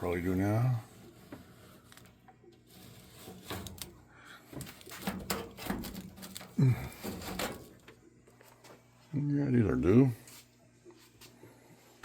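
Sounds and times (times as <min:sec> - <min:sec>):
metal grate clattering and scraping: 0:02.7 - 0:04.0, 0:04.6 - 0:07.9.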